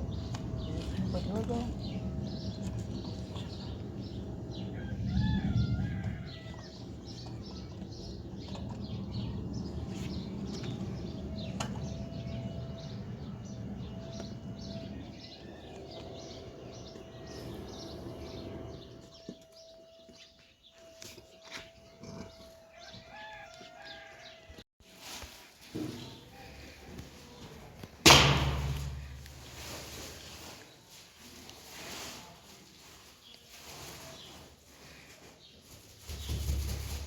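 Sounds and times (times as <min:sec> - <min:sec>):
birds chirping: 0:00.0 - 0:24.4.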